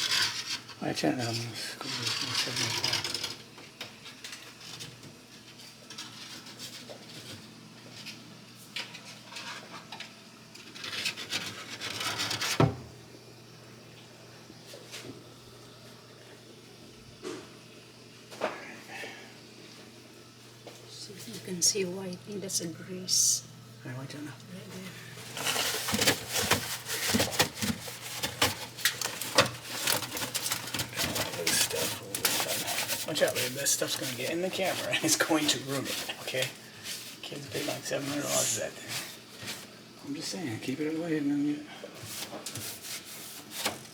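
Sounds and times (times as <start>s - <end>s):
rag scrubbing metal surface: 25.3s - 39.6s.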